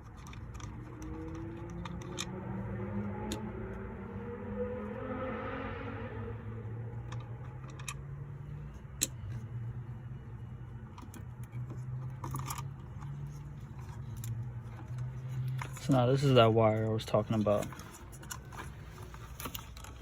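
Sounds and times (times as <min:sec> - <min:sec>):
small parts clicking and rattling: 0:00.0 - 0:02.4, 0:07.0 - 0:20.0.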